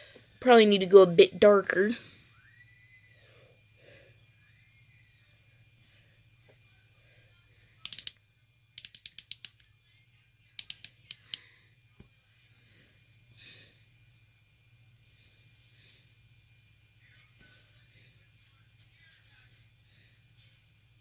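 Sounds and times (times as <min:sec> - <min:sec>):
rapid sharp clicks: 0:07.8 - 0:08.2, 0:08.8 - 0:09.6, 0:10.6 - 0:11.4.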